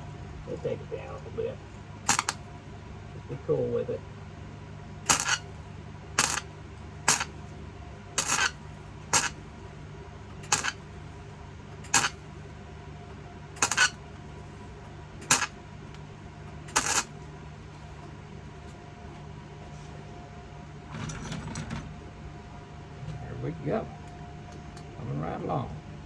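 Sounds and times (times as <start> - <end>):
steady low hum: 0.0 - 21.0, 21.8 - 26.0
welding arc crackling: 2.1 - 2.4, 5.1 - 5.5, 6.2 - 6.5, 7.1 - 7.4, 8.2 - 9.4, 10.4 - 10.8, 11.8 - 12.2, 13.6 - 14.0, 15.2 - 15.6, 16.6 - 17.1.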